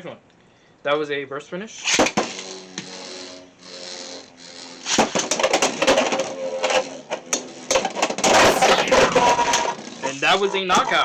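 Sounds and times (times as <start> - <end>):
spinning tops whirring: 8.3 - 9.5.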